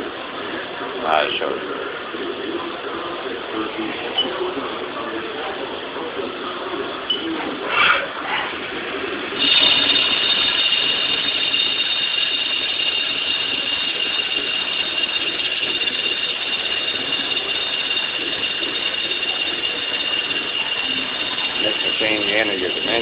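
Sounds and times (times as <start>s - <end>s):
mechanical hum: 0.0s - 23.0s
high-pitched lathe whine: 8.6s - 23.0s.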